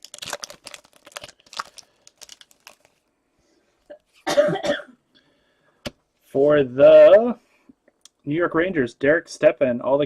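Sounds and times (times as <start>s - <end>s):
card wrapper crinkling and tearing: 0.0s - 3.0s.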